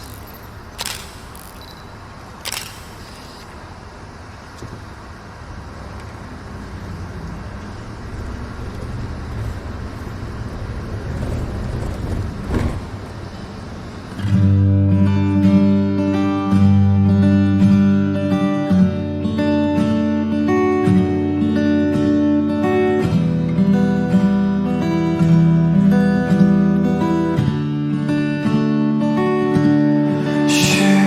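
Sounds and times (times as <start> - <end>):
faint clicks: 0.0 - 1.8, 2.4 - 3.6
acoustic guitar strumming: 14.2 - 31.0.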